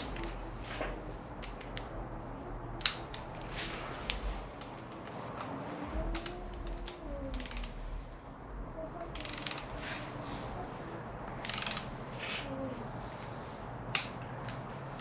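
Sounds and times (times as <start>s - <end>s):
hand ratchet clicking: 6.2s - 7.8s, 9.2s - 9.8s, 11.3s - 11.9s.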